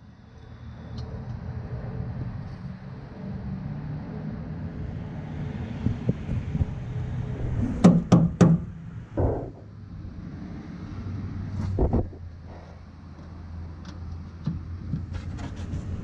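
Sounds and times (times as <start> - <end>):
sharp knocks: 7.8 - 9.7.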